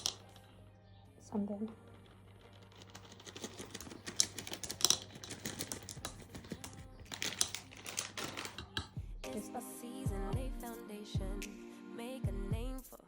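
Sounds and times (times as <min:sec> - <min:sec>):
candy eggs clattering into container: 0:00.0 - 0:00.4, 0:01.6 - 0:08.9.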